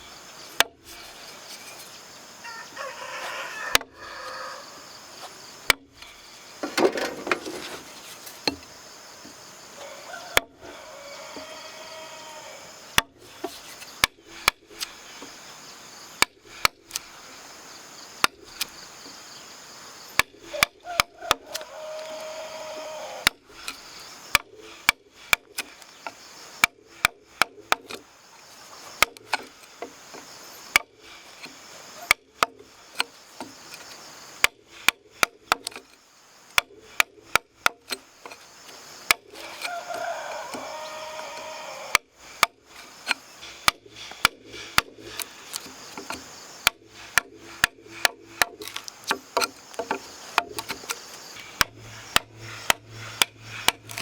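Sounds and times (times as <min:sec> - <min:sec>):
tool striking wood: 0:06.6 - 0:08.7, 0:41.9 - 0:54.0.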